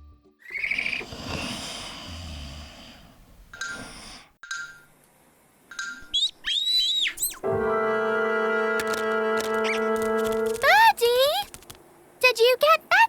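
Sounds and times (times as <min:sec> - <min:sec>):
high chirping tweet: 0:06.0 - 0:07.4.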